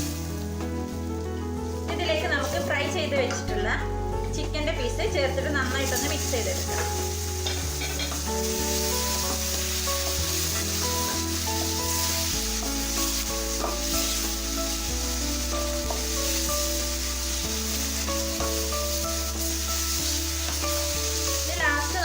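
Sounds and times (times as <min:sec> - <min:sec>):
background music with steady bass: 0:00.0 - 0:22.0
chicken sizzling in frying pan: 0:00.0 - 0:22.0
food being stirred: 0:05.6 - 0:22.0.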